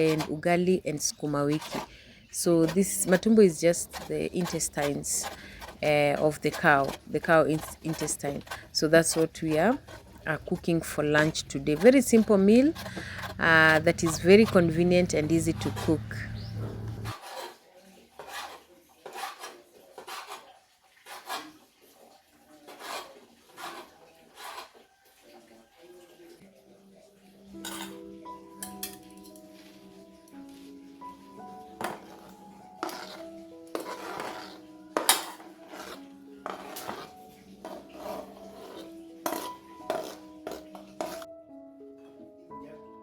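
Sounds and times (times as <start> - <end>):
rough scraping strokes by hand: 0.0 - 16.2, 17.0 - 21.6, 22.6 - 24.8, 32.8 - 41.3
pots and utensils clinking: 0.0 - 17.6, 18.2 - 21.6, 22.6 - 25.3, 27.5 - 29.8, 30.7 - 41.3
soft background music: 0.0 - 43.0.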